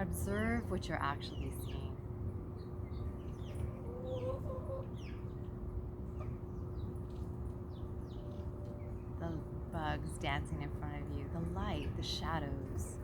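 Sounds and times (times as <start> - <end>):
faint steady hum: 0.0 - 13.0
small birds chirping: 0.0 - 13.0
chickens clucking: 3.4 - 5.6.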